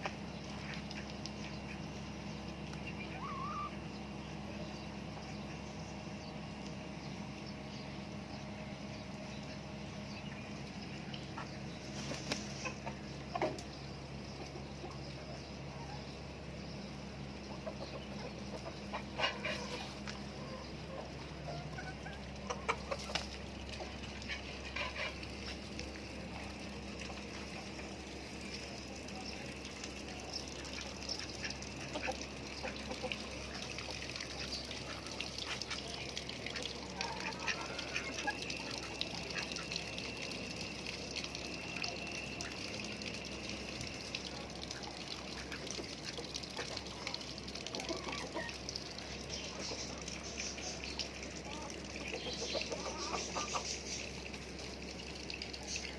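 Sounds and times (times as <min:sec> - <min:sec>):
hens clucking: 0:00.0 - 0:07.4, 0:08.2 - 0:16.3, 0:17.2 - 0:40.1, 0:44.7 - 0:54.2
ducks quacking: 0:17.5 - 0:25.8, 0:30.6 - 0:40.0, 0:51.4 - 0:54.0.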